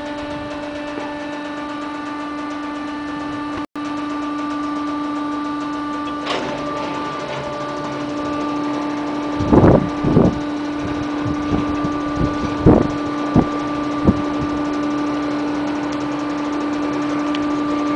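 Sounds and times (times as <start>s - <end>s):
machine hum: 0.0s - 17.9s.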